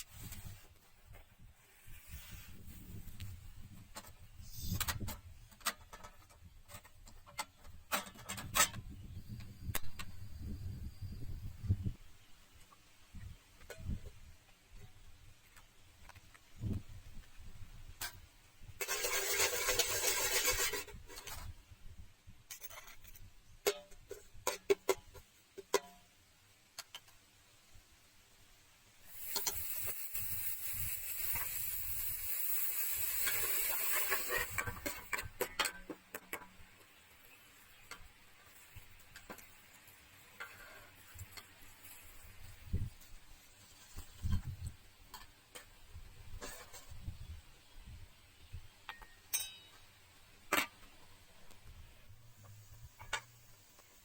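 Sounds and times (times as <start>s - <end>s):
food sizzling in a pan: 29.1s - 34.6s.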